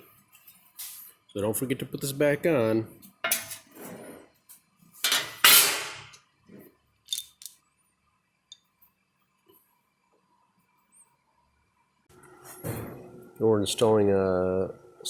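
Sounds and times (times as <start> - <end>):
metal tools clinking: 7.1 - 7.6.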